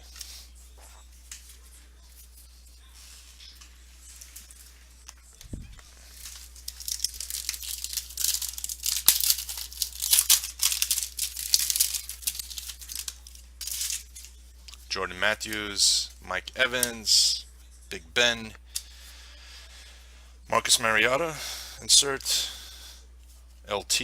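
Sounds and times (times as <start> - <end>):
foil wrapper tearing and crinkling: 6.0 - 14.4.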